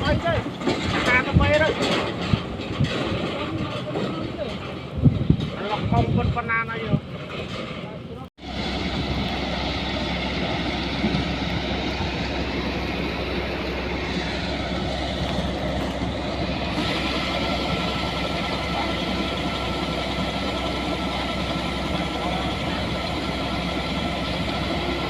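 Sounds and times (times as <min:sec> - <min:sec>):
engine-driven machine running: 0:08.4 - 0:25.0.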